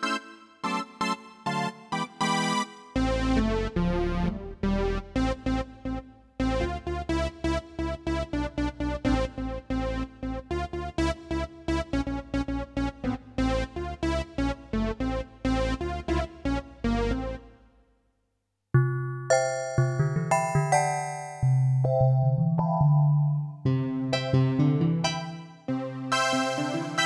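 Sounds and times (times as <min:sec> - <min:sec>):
portable keyboard notes: 0:18.8 - 0:27.0.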